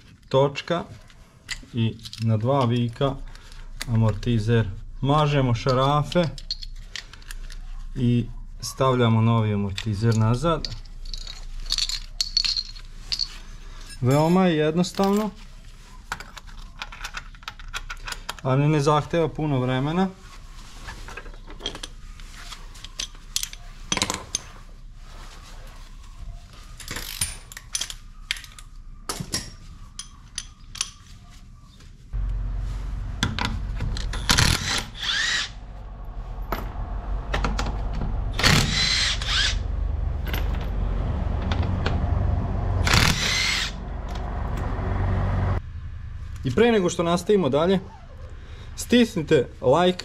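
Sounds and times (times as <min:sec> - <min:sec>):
hand tools clicking and knocking: 0:05.6 - 0:07.6
steady low hum: 0:32.1 - 0:49.2
power tool running: 0:34.3 - 0:35.6, 0:38.3 - 0:40.5, 0:42.8 - 0:43.8.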